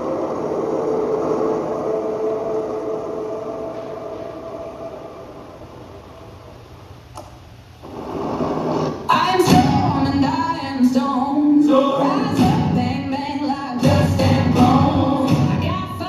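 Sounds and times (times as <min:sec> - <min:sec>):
song with singing: 0:09.1 - 0:16.0.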